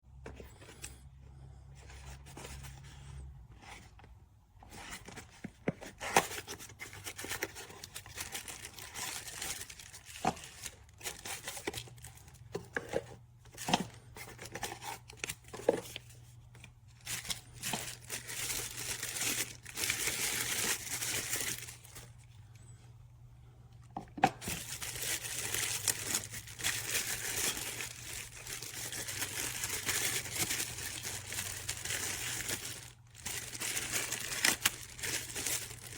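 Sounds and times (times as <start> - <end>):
packaging tearing and crinkling: 6.2 - 12.2, 17.0 - 22.1, 24.4 - 35.9.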